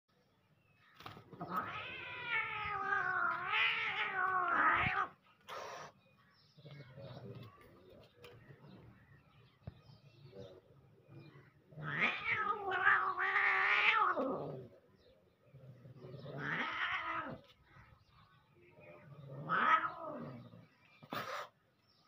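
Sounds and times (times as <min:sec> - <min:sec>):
cat yowling: 0:01.4 - 0:05.2, 0:11.8 - 0:14.5, 0:16.4 - 0:17.4, 0:19.4 - 0:20.4.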